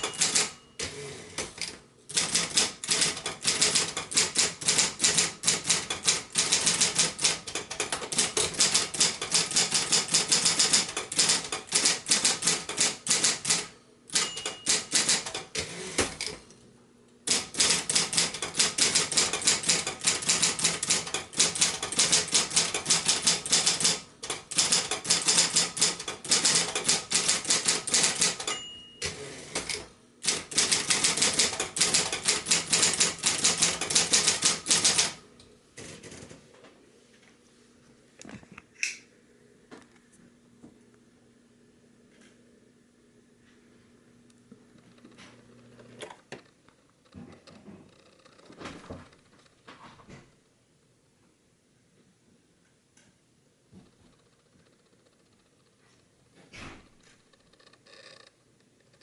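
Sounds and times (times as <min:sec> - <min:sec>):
typewriter bell ding: 0:00.0 - 0:00.9, 0:12.7 - 0:15.4, 0:24.6 - 0:29.2
typewriter keys striking: 0:00.0 - 0:16.3, 0:17.3 - 0:35.2.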